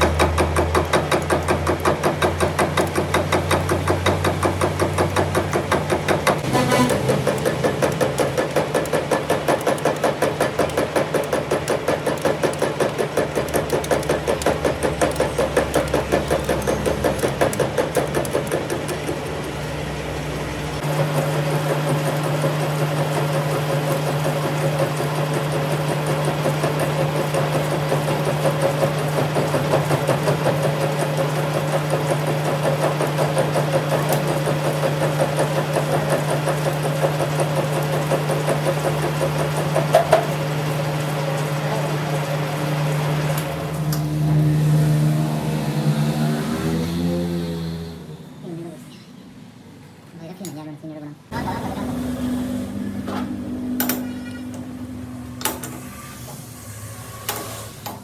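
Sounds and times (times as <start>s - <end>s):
machine tool knocking: 0.0s - 19.6s
machine hum with low drone: 5.5s - 10.8s.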